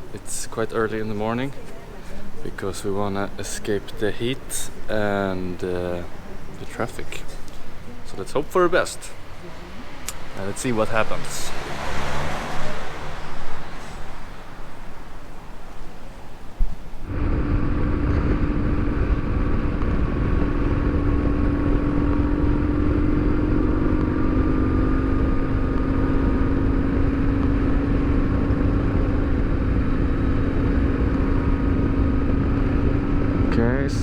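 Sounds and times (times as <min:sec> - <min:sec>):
motorcycle engine cruising: 0:00.0 - 0:34.0
road rumble: 0:00.0 - 0:34.0
wind: 0:00.0 - 0:34.0.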